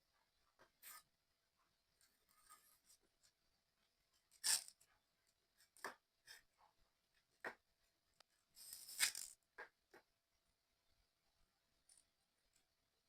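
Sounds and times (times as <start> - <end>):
rustling scrape: 8.6 - 9.4.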